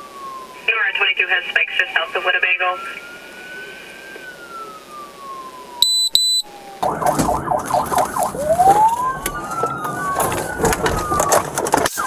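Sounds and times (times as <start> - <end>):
police siren wailing: 0.0 - 12.0
short high beeps: 5.8 - 6.4.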